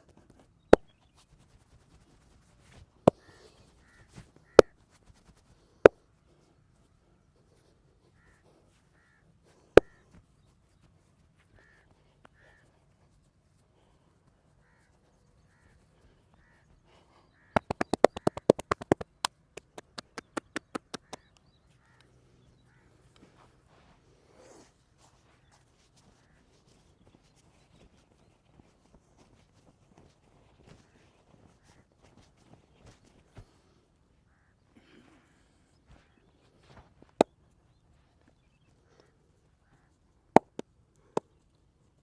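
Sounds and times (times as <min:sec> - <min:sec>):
crows cawing faintly: 0:02.6 - 0:19.2, 0:20.2 - 0:41.6
massage cracks and slaps: 0:17.6 - 0:21.3
quick hand-tapping strokes: 0:17.6 - 0:21.3.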